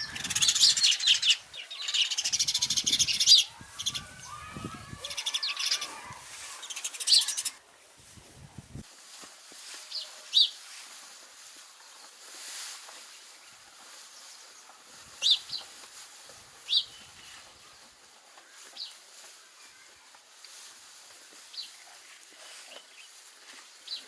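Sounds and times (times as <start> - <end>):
sparrows chirping: 0.0 - 4.4, 5.0 - 7.6.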